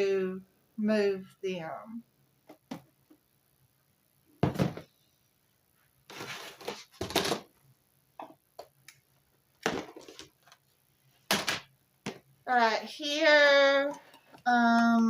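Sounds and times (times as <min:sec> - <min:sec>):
object thumping down: 0:04.4 - 0:04.9
rustling and knocking: 0:04.4 - 0:05.0, 0:06.1 - 0:07.5.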